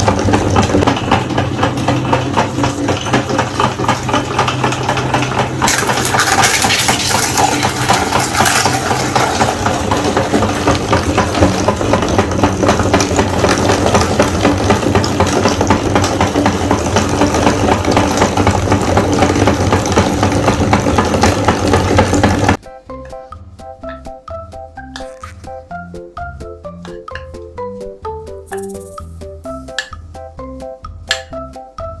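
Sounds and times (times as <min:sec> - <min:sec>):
meat grinder running: 0:00.0 - 0:22.6.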